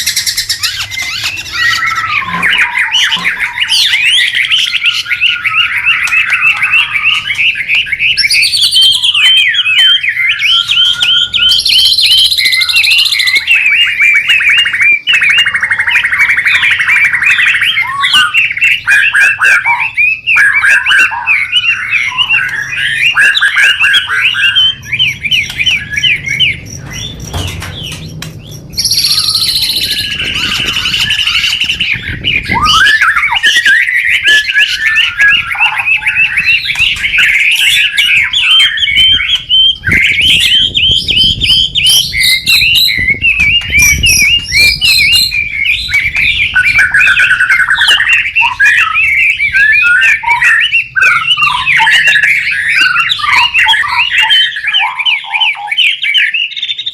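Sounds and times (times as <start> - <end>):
bird singing: 0.0 - 56.9.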